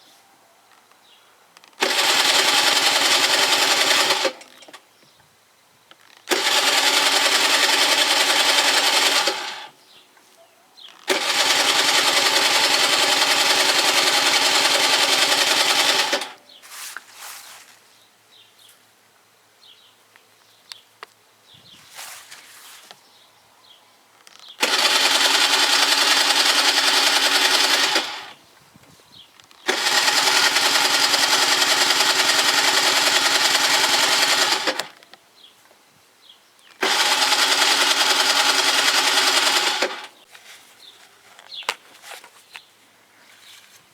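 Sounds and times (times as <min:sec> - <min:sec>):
electric starter cranking engine: 0:01.7 - 0:04.7, 0:06.2 - 0:09.8, 0:11.1 - 0:16.4, 0:24.6 - 0:28.4, 0:29.6 - 0:35.0, 0:36.8 - 0:40.2.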